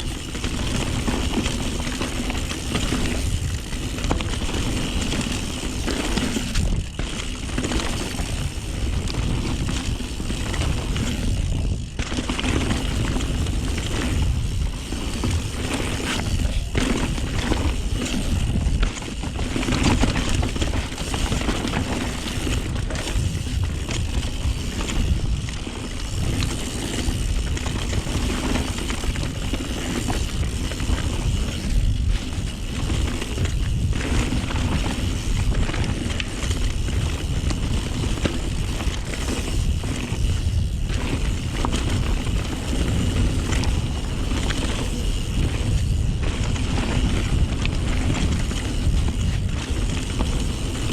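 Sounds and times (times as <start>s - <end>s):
bike clattering over rough ground: 0.0s - 50.9s
mountain bike tyre noise: 0.0s - 50.9s.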